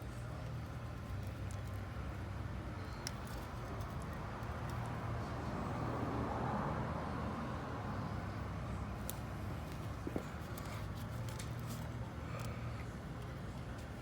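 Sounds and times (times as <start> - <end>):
vehicle passing: 5.0 - 10.2.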